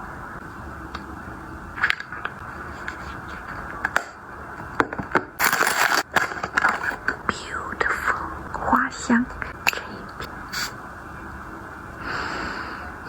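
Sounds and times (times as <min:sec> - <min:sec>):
light clicks and scrapes: 0:01.8 - 0:04.2
crinkling: 0:01.8 - 0:07.3.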